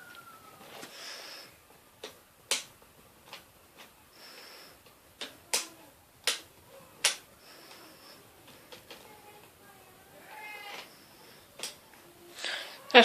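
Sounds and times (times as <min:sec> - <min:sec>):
sharp clicks and taps: 0:04.8 - 0:07.8.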